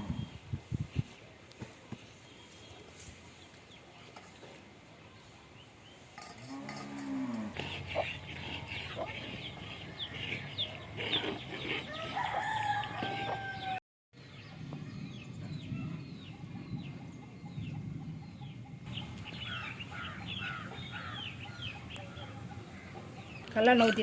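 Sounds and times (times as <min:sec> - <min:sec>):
chickens clucking: 0:06.2 - 0:13.6
small birds chirping: 0:07.1 - 0:24.0
rooster crowing: 0:11.9 - 0:13.8.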